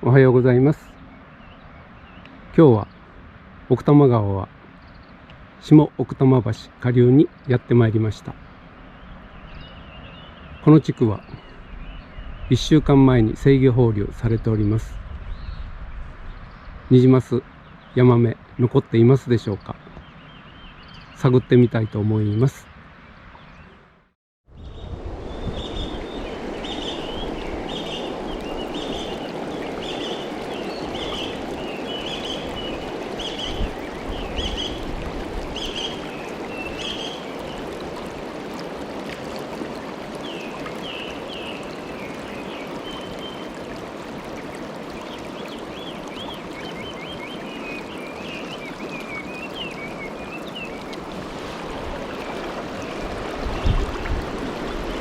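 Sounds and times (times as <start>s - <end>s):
small bird calling: 25.4s - 38.0s
river water rushing over rocks: 25.6s - 55.0s.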